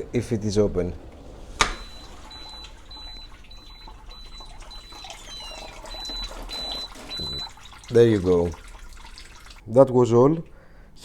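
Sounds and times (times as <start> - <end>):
faint high whine: 0.0 - 8.6
dishwasher running: 0.0 - 9.6
water splashing and trickling: 0.0 - 9.7.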